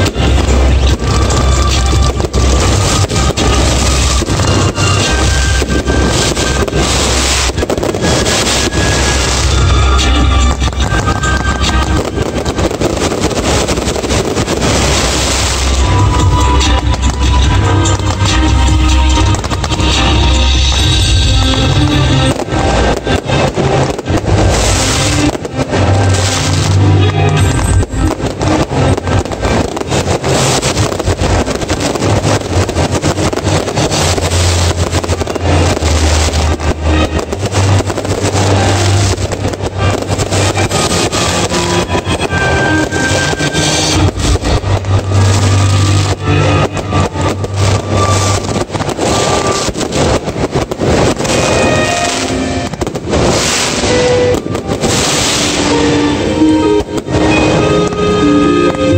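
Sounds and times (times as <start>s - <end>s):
fireworks bursting and crackling: 0.0s - 58.9s
low rumble: 0.0s - 58.9s
music playing: 0.0s - 58.9s.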